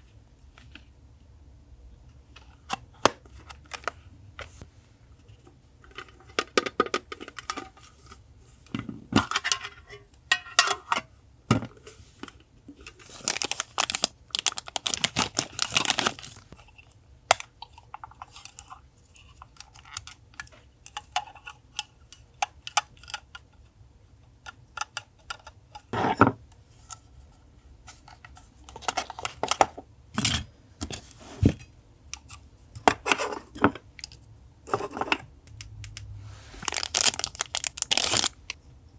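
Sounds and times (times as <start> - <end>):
paper rustling and tearing: 36.4 - 38.5.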